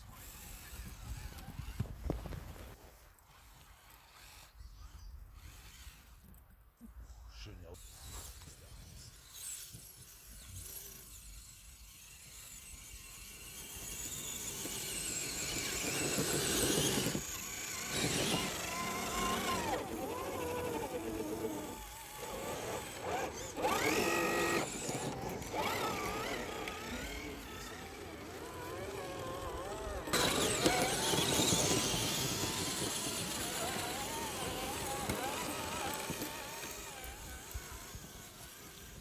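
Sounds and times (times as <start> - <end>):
electric motor and gears whining: 10.4 - 39.0.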